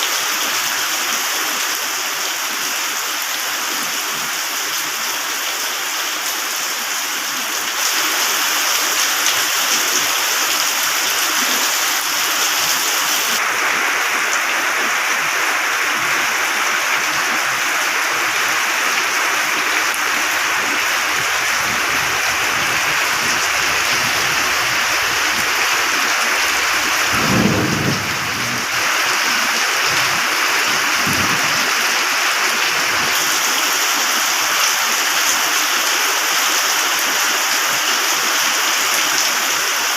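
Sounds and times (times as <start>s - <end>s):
heavy rain: 0.0s - 39.9s
low rumble of thunder: 21.2s - 29.0s, 31.0s - 31.7s.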